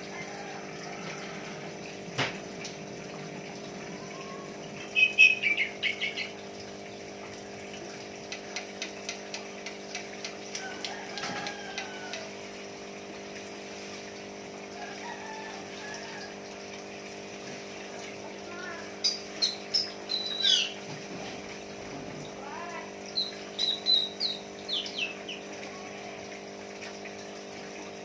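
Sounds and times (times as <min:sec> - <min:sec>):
bird chattering and whistling: 0:04.1 - 0:06.4, 0:19.0 - 0:20.8, 0:23.2 - 0:25.4.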